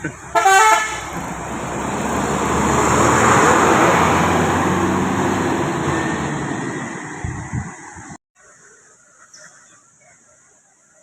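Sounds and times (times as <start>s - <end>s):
bus driving past: 0.0s - 8.2s.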